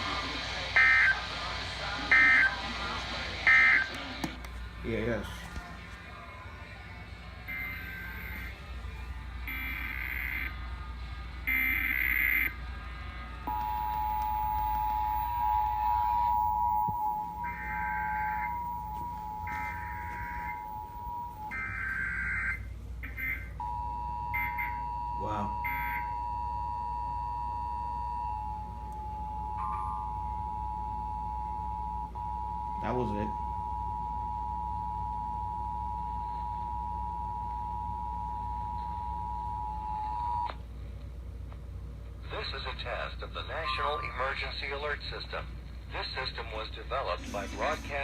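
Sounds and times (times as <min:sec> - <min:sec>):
low background hum: 0:00.0 - 0:48.0
two-tone attention signal: 0:07.5 - 0:08.5, 0:09.5 - 0:10.5, 0:11.5 - 0:12.5, 0:13.5 - 0:40.5
two-tone alert signal: 0:09.5 - 0:10.5, 0:11.5 - 0:12.5, 0:13.5 - 0:26.4.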